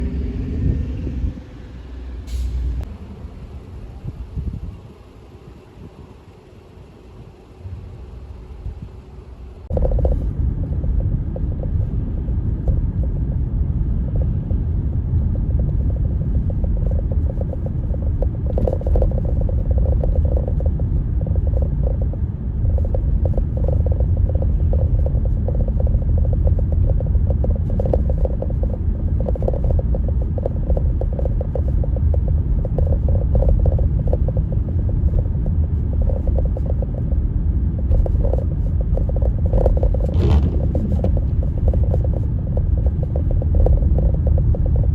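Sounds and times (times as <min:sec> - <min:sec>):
wind buffeting microphone: 0:00.0 - 0:44.9.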